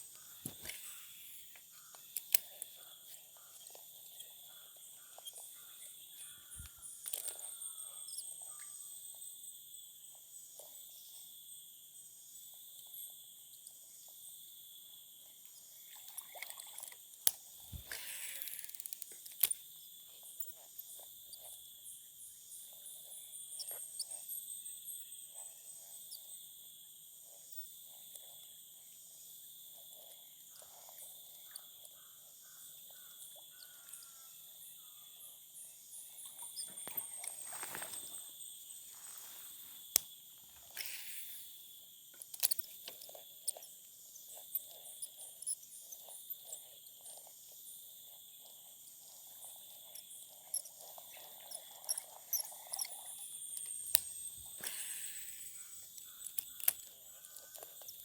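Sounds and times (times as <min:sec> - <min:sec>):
high-pitched insect chorus: 0:30.4 - 0:42.7
rustling: 0:36.9 - 0:40.7.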